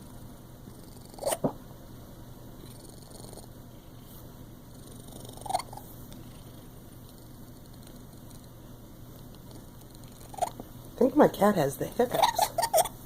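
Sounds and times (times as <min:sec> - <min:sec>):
cat purring: 0:00.0 - 0:01.6, 0:02.6 - 0:11.2
cat hiccuping: 0:01.1 - 0:01.6, 0:05.2 - 0:05.8, 0:12.2 - 0:13.0.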